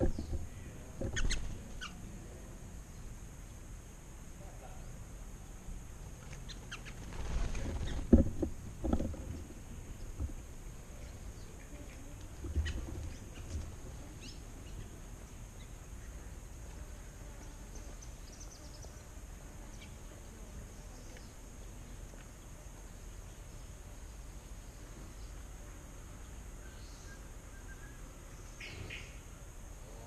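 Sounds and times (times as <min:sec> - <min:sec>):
low thumps: 0:00.0 - 0:01.4, 0:07.6 - 0:10.8
faint bird chirps: 0:00.0 - 0:02.1, 0:10.9 - 0:15.0, 0:26.2 - 0:29.3.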